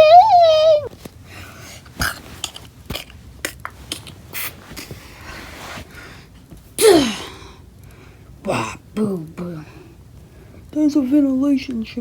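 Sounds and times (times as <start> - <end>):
voice whoop sliding down: 0.0 - 0.9.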